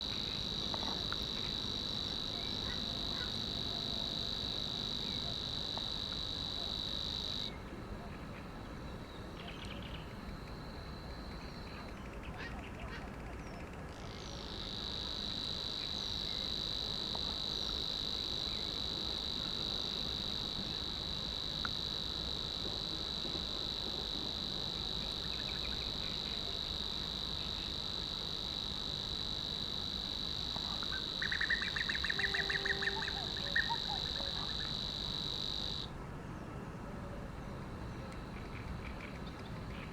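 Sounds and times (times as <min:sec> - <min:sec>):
cricket high trill: 0:00.0 - 0:07.6, 0:14.0 - 0:35.9.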